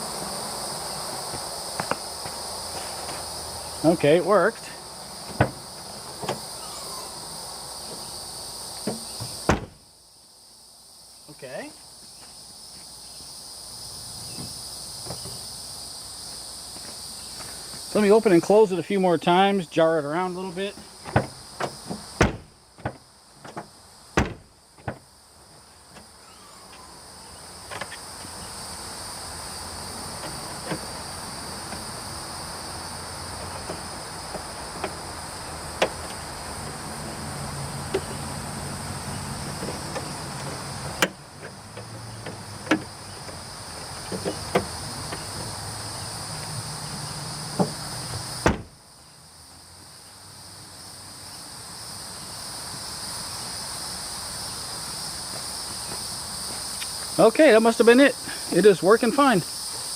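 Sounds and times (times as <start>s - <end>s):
crickets chirping: 0.0s - 59.9s
latch clunks: 8.8s - 9.8s, 21.0s - 23.6s, 24.2s - 25.0s, 48.4s - 48.8s
car liftgate slamming shut: 8.9s - 9.8s, 21.1s - 23.0s, 24.2s - 25.0s, 48.4s - 48.8s.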